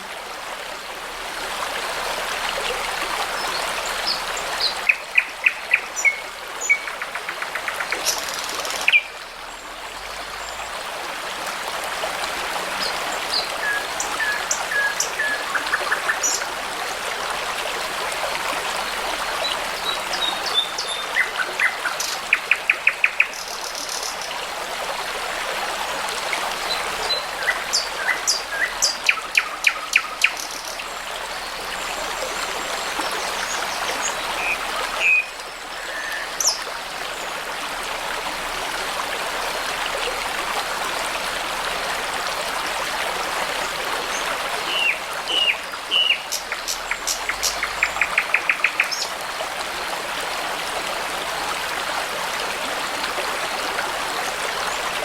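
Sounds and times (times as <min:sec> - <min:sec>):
babbling brook: 0:00.0 - 0:55.0
songbirds singing: 0:26.7 - 0:36.7, 0:44.1 - 0:49.2.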